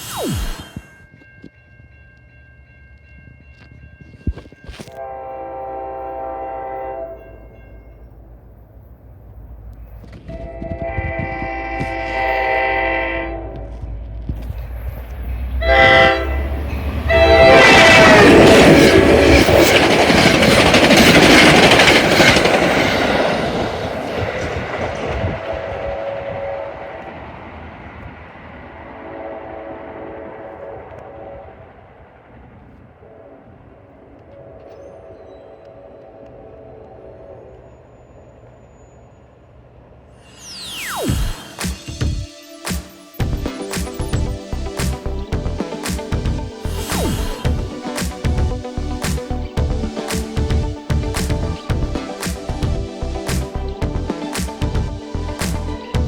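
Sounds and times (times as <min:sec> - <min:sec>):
diesel locomotive horn blast: 0:04.9 - 0:07.4, 0:10.3 - 0:13.9, 0:15.4 - 0:19.6, 0:25.5 - 0:27.4, 0:28.8 - 0:32.0
diesel train passing: 0:04.9 - 0:56.0
train wheels clattering: 0:16.3 - 0:28.8
steady low rumble: 0:43.2 - 0:56.0.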